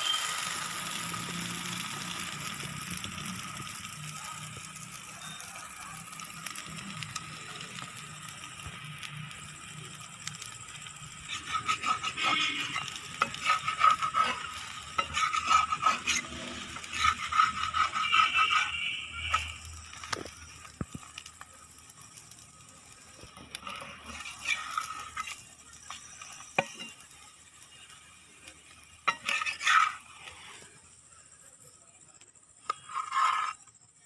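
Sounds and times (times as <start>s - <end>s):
dosa sizzling on a hot pan: 0.0s - 34.0s
quick scrapes and knocks: 32.6s - 33.6s.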